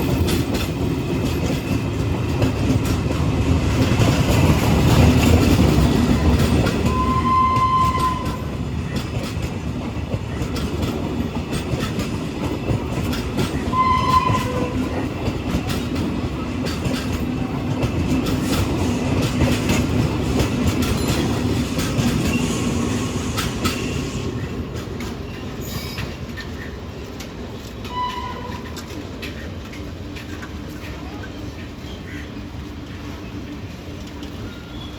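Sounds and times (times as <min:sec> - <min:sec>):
train rumble: 0:00.0 - 0:34.9
train wheels clicking on rails: 0:00.0 - 0:34.9
train horn blasts: 0:06.8 - 0:08.5, 0:13.7 - 0:15.0, 0:27.9 - 0:28.9.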